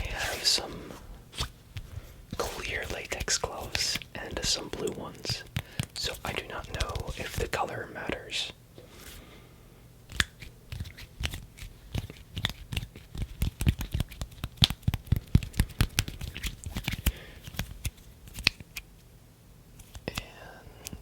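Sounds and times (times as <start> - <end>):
hand and finger clicks and snaps: 10.1 - 18.9, 19.8 - 21.0.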